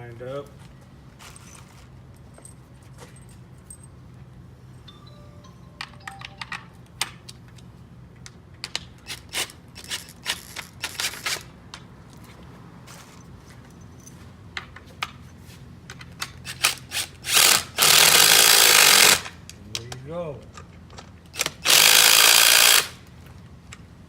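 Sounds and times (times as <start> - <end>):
bolts and washers clinking: 5.8 - 7.6
impact driver running: 16.5 - 19.3, 21.4 - 23.0.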